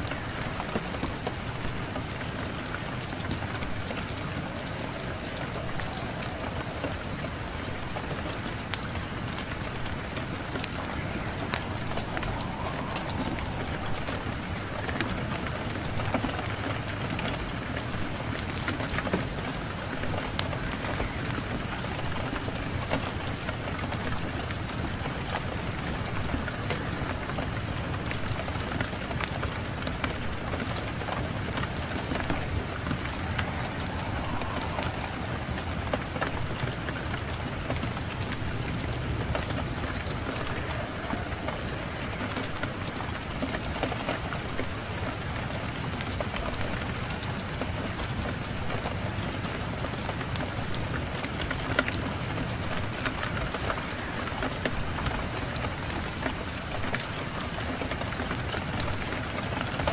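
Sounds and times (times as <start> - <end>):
fireplace fire crackling: 0.0 - 59.9
wind rushing: 3.2 - 17.0, 31.0 - 42.3.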